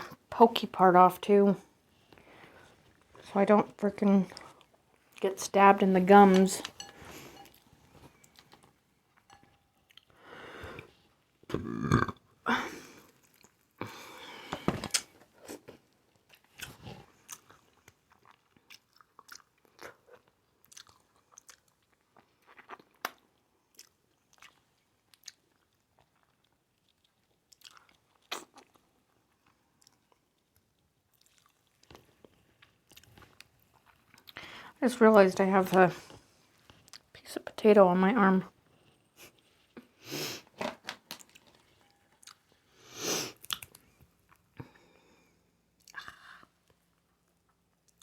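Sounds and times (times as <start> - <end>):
person chewing and crunching food: 6.1 - 34.7, 36.0 - 37.1, 38.6 - 48.0.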